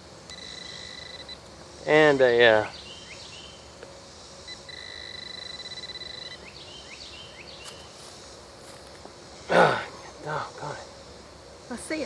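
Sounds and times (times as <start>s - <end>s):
metal detector pulsing tone: 0.3s - 1.4s, 4.5s - 6.5s.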